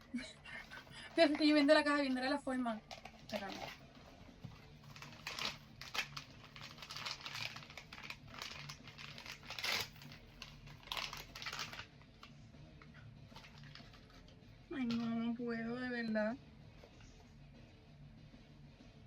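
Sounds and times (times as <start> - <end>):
packaging crinkling and rustling: 2.8 - 3.8, 4.5 - 11.9, 13.3 - 14.3.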